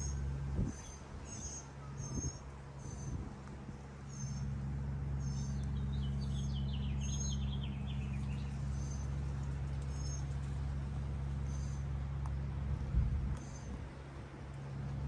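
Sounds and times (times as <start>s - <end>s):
small birds chirping: 0.0s - 3.2s, 4.1s - 4.5s, 5.2s - 10.6s, 11.4s - 11.9s, 13.4s - 13.8s
low mechanical hum: 0.0s - 15.0s
bird singing descending notes: 5.2s - 9.1s.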